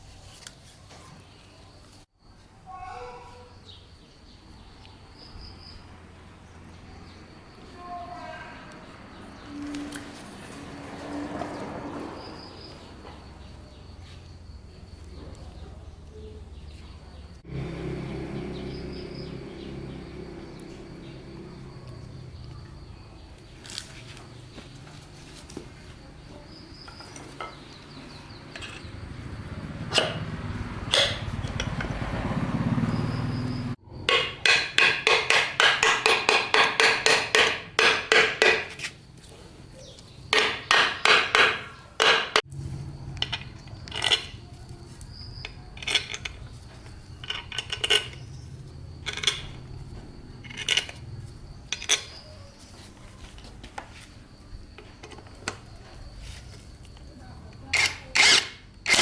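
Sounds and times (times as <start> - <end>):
hammer striking metal: 34.0 - 38.7, 40.4 - 42.5.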